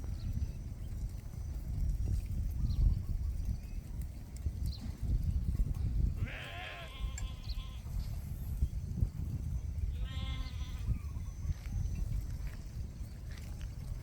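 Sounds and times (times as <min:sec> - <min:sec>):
sheep bleating: 0:06.2 - 0:07.8, 0:10.0 - 0:10.9.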